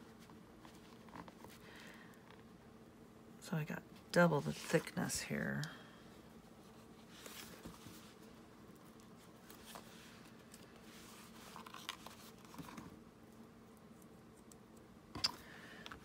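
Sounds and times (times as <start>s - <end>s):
low steady hum: 0.0s - 16.0s
soft rustles: 6.1s - 13.0s
cardboard and paper handling: 7.0s - 8.4s, 9.1s - 12.9s.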